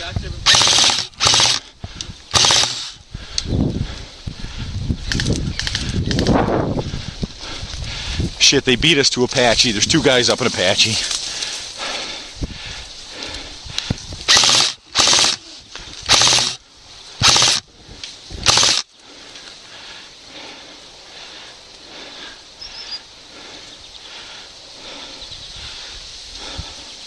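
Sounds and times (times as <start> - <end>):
automatic airsoft gun bursts: 0.4 - 1.7, 2.3 - 3.0, 14.3 - 15.5, 16.1 - 16.6, 17.2 - 17.6, 18.4 - 18.9.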